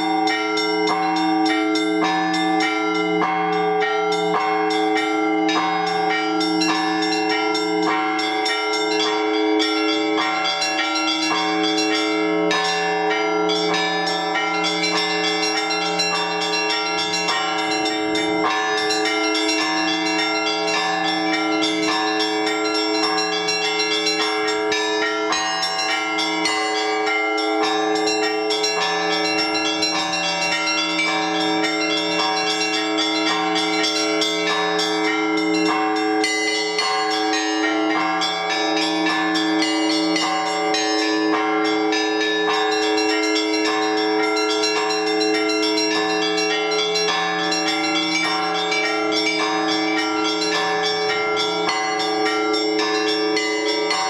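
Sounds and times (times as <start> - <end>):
large bells ringing hum: 0.0 - 54.0
small bells striking quickly: 13.4 - 54.0.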